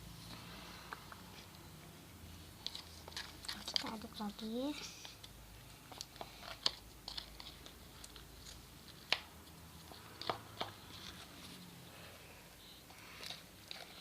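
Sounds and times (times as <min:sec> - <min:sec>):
slime squelching: 0:02.5 - 0:12.0.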